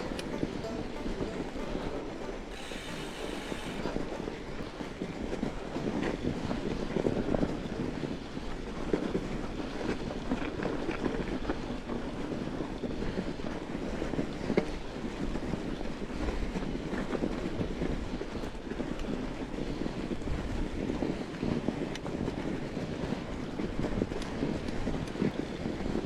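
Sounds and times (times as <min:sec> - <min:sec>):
wind buffeting microphone: 0:00.0 - 0:26.0
bike tyres rumbling on snow: 0:06.7 - 0:26.0.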